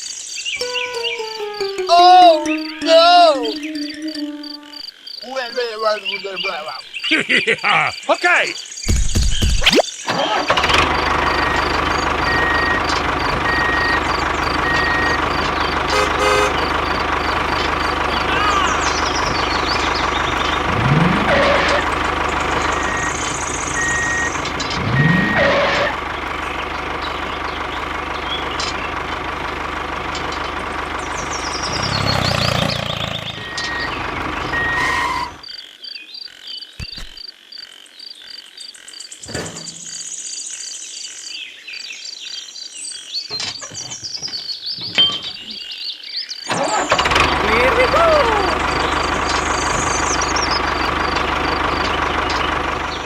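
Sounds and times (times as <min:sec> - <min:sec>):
truck engine running: 0:00.6 - 0:04.7, 0:10.2 - 0:35.4, 0:46.5 - 0:53.0
reversing beeps: 0:11.3 - 0:15.3, 0:22.9 - 0:24.4, 0:33.4 - 0:35.4.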